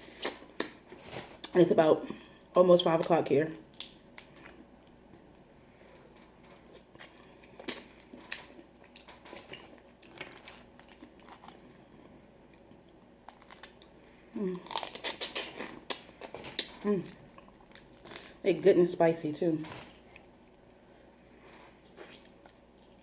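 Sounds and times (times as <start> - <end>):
chewing and mouth smacking: 6.2 - 11.8, 12.4 - 14.0, 14.6 - 18.4, 21.8 - 23.0.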